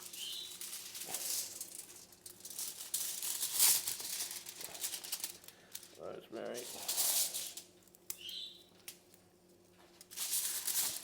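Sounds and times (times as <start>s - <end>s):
hands rustling herb sprigs: 0.0s - 7.6s.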